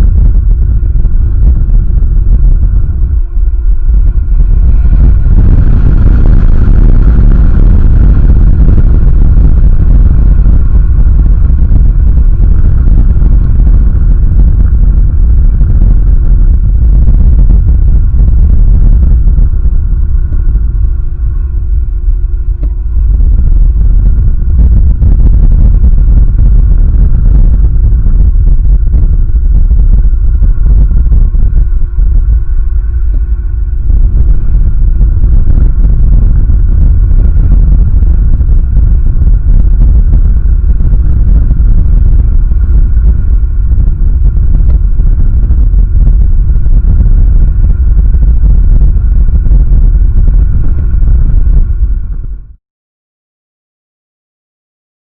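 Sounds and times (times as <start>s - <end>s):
wind buffeting microphone: 0.0s - 52.6s.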